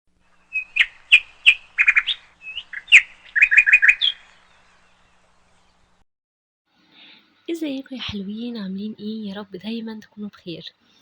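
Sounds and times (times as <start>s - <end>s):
small bird chirping: 0.2s - 5.9s.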